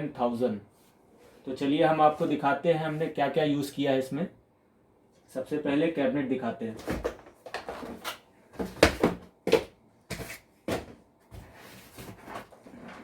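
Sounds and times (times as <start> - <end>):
pc case knocks and clatter: 8.6 - 9.7.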